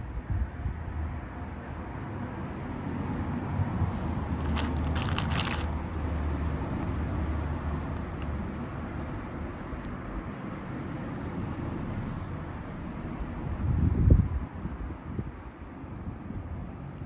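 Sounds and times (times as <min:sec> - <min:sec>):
twig fire crackling: 0:00.0 - 0:17.0.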